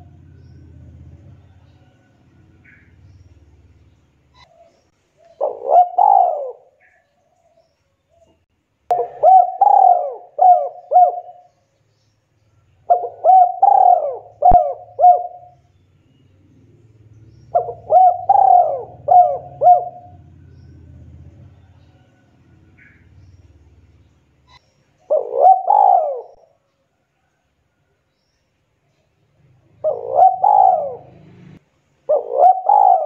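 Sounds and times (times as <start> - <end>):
dove cooing: 0.0 - 3.2, 4.4 - 7.0, 8.9 - 11.6, 12.8 - 15.6, 17.5 - 23.4, 24.5 - 26.6, 29.7 - 33.0.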